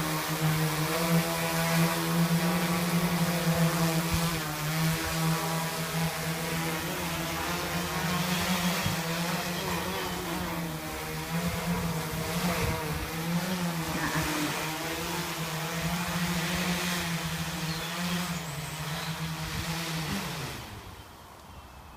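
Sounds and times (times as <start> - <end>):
propeller wind noise: 0.0 - 21.6
quadcopter motors buzzing: 0.0 - 21.9.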